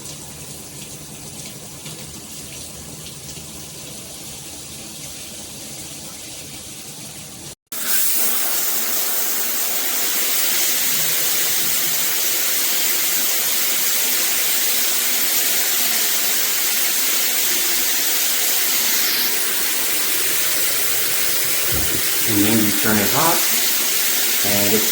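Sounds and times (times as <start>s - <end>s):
shower head spraying water: 7.8s - 24.9s.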